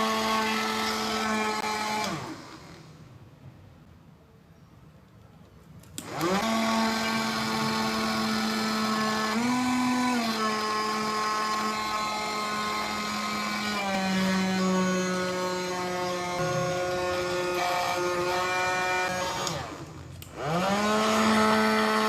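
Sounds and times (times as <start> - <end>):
small motor high whine: 0.0 - 3.0, 6.0 - 22.0.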